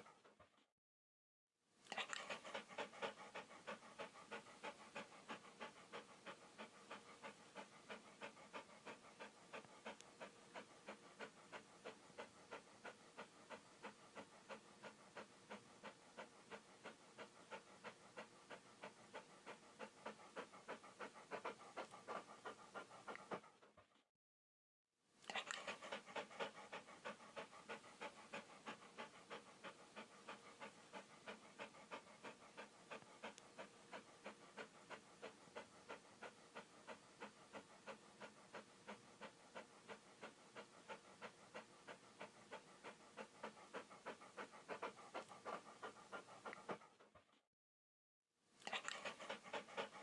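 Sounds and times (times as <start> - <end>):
dog panting rapidly: 0.0 - 0.7, 1.9 - 24.0, 25.3 - 47.4, 48.6 - 50.0.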